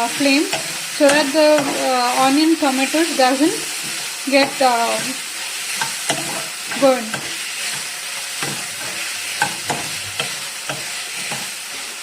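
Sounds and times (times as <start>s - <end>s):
utensil scraping a pan: 0.0s - 12.0s
vegetables sizzling in a pan: 0.0s - 12.0s.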